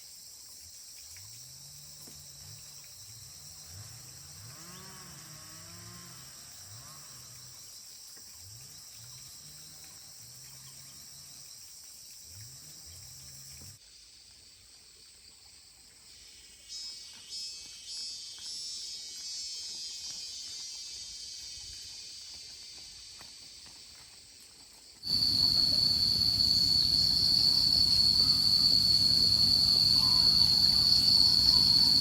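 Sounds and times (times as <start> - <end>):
insects buzzing: 0.2 - 14.0, 25.0 - 32.0
low rumble: 25.1 - 32.0.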